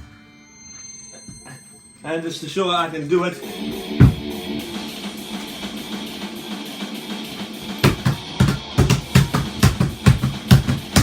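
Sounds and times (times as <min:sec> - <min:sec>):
drum kit beat: 0:03.4 - 0:11.0.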